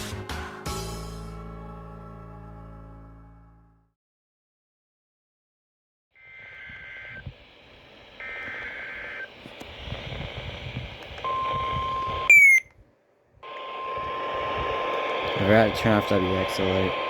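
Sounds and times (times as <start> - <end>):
radio static hiss: 6.2 - 12.6, 13.5 - 17.0
two-tone data warble: 6.2 - 12.7
falling chirp: 11.3 - 12.7
steady alert tone: 12.3 - 12.6.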